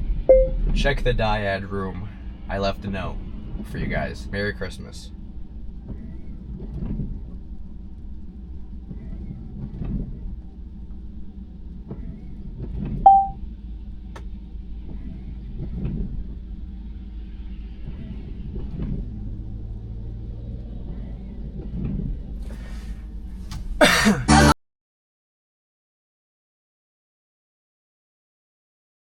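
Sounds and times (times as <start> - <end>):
short electronic chime: 0.3 - 0.6, 13.1 - 13.4
road and tyre rumble: 0.7 - 24.2.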